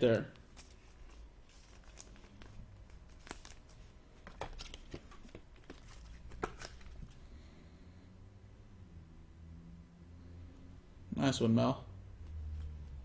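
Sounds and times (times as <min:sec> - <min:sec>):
card sleeves rustling and clicking: 0:00.4 - 0:07.2.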